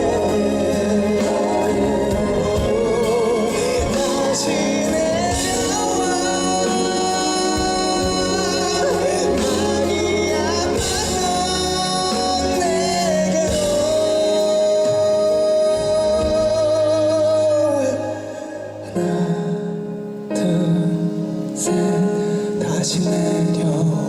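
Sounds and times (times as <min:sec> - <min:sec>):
band playing pop ballad: 0:00.0 - 0:24.0
person singing with vibrato: 0:00.0 - 0:24.0.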